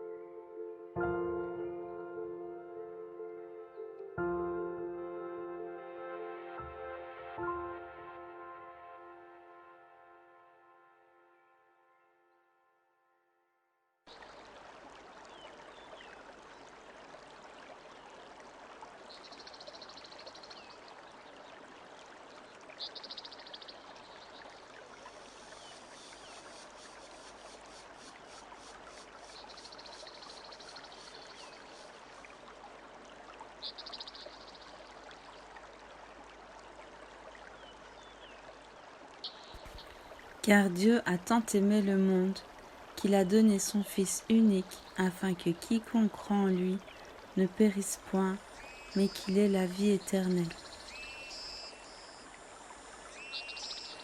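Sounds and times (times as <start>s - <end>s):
stream flowing: 14.1s - 54.0s
high trilling bird calls: 33.6s - 34.7s, 48.5s - 52.2s, 53.2s - 54.0s
faint chirps: 48.4s - 54.0s.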